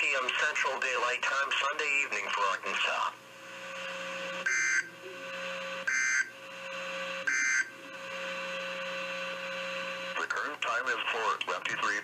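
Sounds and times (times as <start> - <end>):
radio hiss: 0.0 - 3.9, 8.9 - 12.0
faint steady hum: 0.0 - 12.0.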